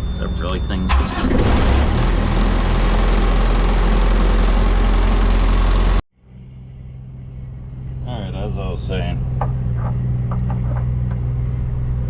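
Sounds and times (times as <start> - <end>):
heavy diesel engine running: 0.0 - 6.0.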